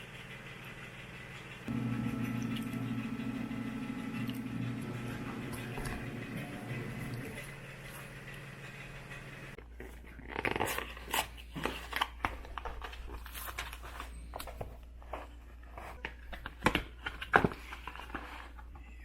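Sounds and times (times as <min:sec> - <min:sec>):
faint low hum: 0:01.2 - 0:10.2
crunching and chewing: 0:09.6 - 0:19.0.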